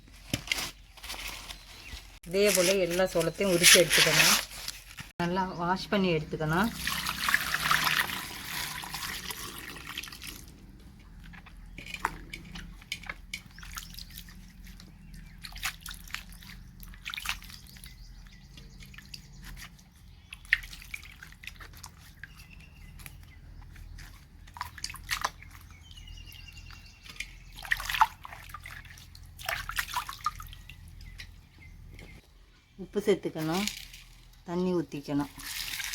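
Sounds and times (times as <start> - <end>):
water running: 6.3 - 11.0
water splashing: 6.5 - 10.7, 27.5 - 31.1, 35.2 - 35.9.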